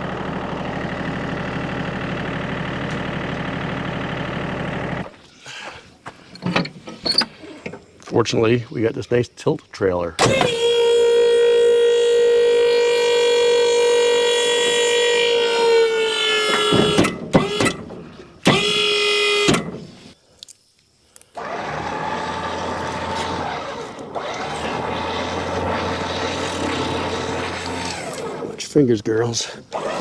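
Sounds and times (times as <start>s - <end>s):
electric motor whining: 10.2s - 17.8s, 18.4s - 19.7s, 21.4s - 28.7s, 29.7s - 30.0s.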